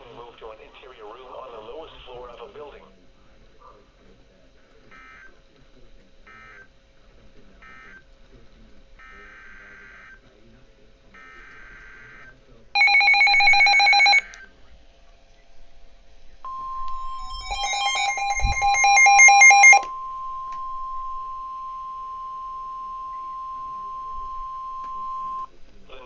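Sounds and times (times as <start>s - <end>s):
steady alarm tone: 11.2s - 14.4s, 16.5s - 25.5s
trilling electronic alert: 12.8s - 14.3s, 16.5s - 25.5s
warbling data tones: 16.5s - 25.5s.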